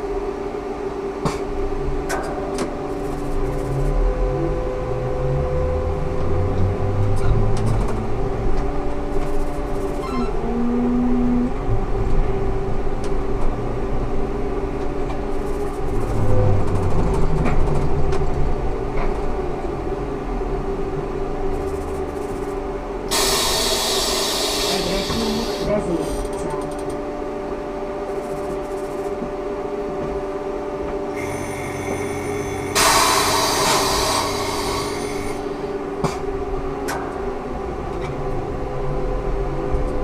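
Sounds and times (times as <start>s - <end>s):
low rumble: 3.0s - 23.1s
burst of hiss: 23.1s - 25.7s, 31.2s - 35.7s.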